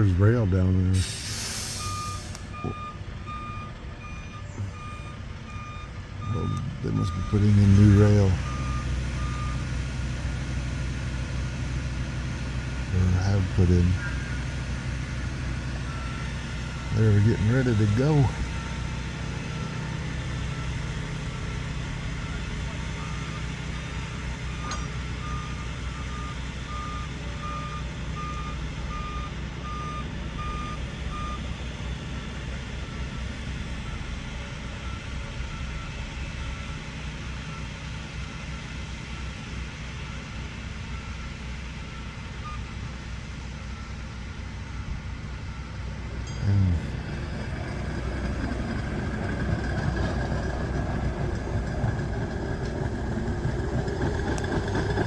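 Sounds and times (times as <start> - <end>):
diesel engines idling: 0.0 - 55.0
backup alarm beeping: 1.1 - 9.6, 12.6 - 18.9, 24.6 - 31.6.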